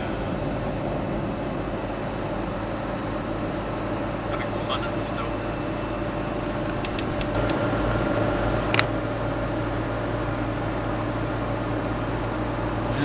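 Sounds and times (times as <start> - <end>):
car cabin road and engine noise: 0.0 - 13.0.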